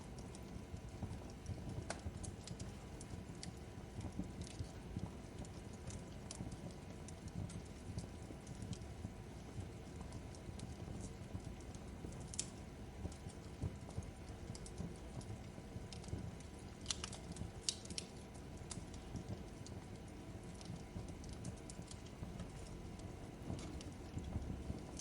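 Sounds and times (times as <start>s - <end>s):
fire popping and snapping: 0.0s - 25.0s
fire rumbling: 0.0s - 25.0s.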